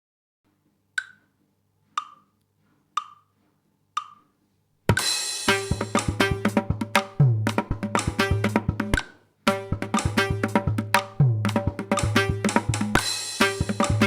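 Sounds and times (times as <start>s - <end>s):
metronome clicks: 1.0s - 1.3s, 2.0s - 2.4s, 3.0s - 3.3s, 4.0s - 4.3s
hand drum strokes: 5.5s - 14.0s.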